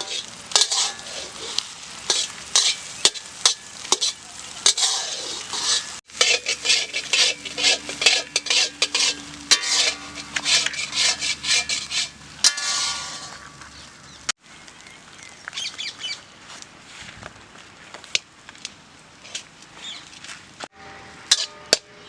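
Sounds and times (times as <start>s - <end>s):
spoon stirring and scraping pan: 0.0s - 13.7s, 21.3s - 21.8s
food sizzling: 0.0s - 15.9s.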